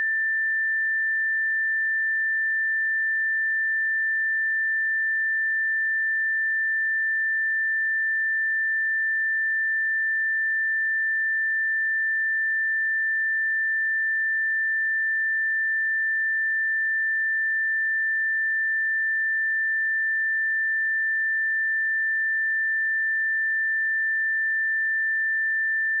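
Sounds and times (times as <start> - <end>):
sine-wave test tone: 0.0 - 26.0.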